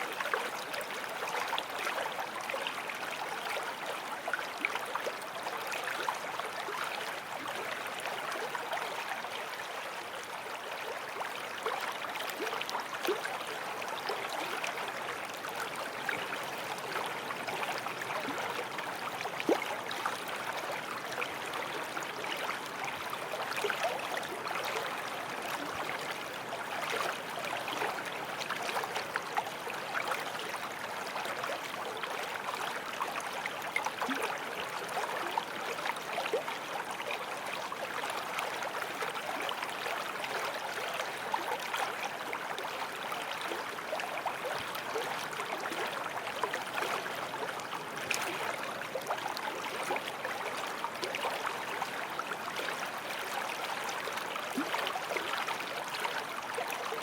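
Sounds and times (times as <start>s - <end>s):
stream babbling over stones: 0.0s - 57.0s.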